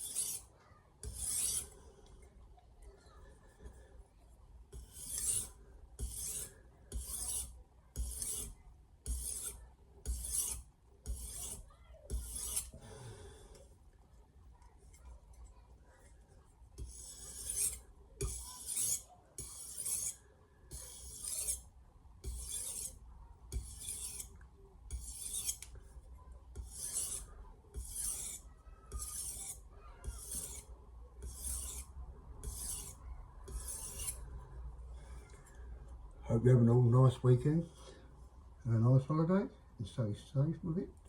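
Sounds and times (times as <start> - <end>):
knife scraping on sharpening plate: 0.0 - 0.4, 1.0 - 1.8, 4.7 - 12.8, 16.8 - 21.6, 22.2 - 23.0, 23.6 - 24.3, 24.9 - 25.7, 26.6 - 34.2.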